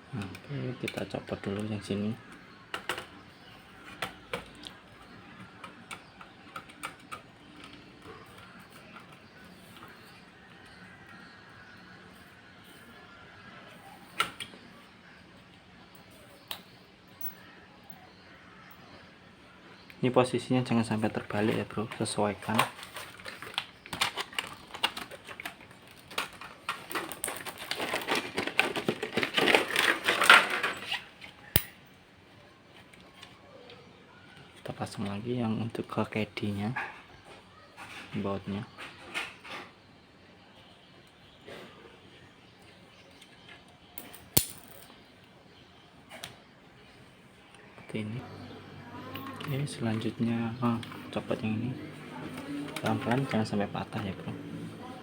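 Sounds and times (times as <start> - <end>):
small hard parts clicking and tapping: 21.2 - 30.9.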